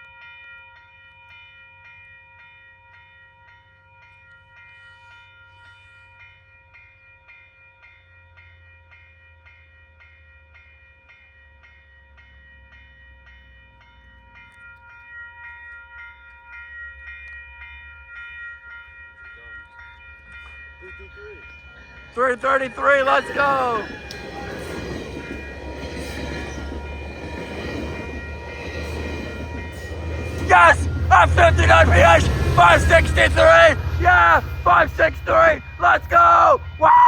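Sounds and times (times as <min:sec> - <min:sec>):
diesel locomotive rumble: 0:22.1 - 0:37.0
level crossing bell ringing: 0:22.2 - 0:27.1, 0:27.8 - 0:37.0.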